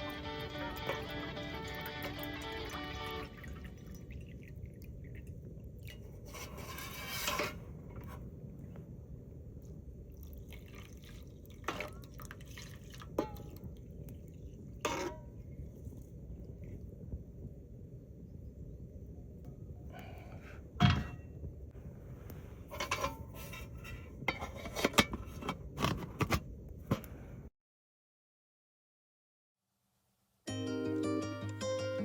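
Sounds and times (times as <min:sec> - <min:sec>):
low background rumble: 0:07.5 - 0:24.4.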